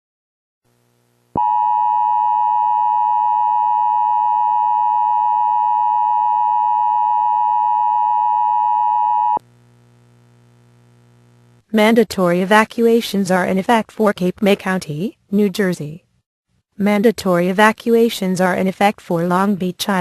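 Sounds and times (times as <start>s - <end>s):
two-tone alarm: 1.4s - 9.4s.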